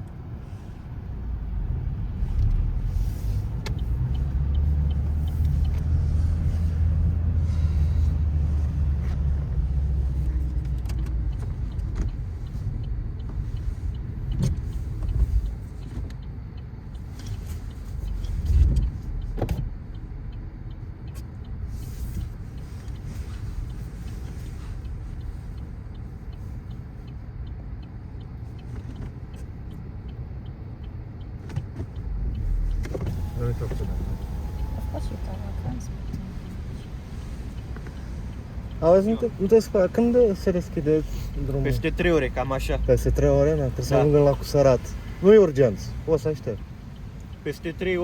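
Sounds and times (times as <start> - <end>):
motor vehicle rumble: 0.0 - 48.0.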